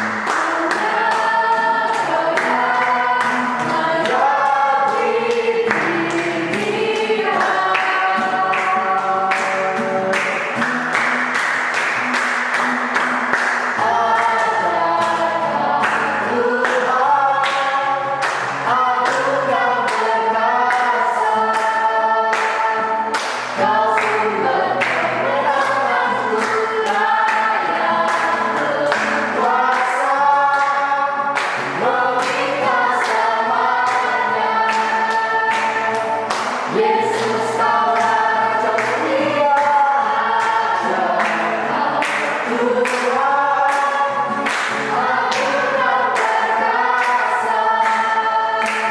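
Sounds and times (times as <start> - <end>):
group singing a worship song: 0.0 - 48.9.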